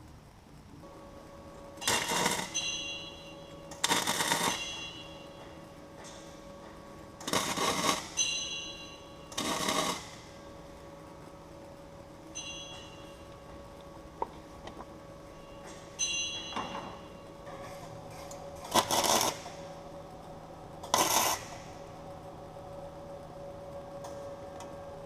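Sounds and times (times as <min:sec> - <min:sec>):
steady background hum: 0:00.0 - 0:25.0
light metallic clinks: 0:08.1 - 0:09.4, 0:12.3 - 0:13.6, 0:15.4 - 0:18.5.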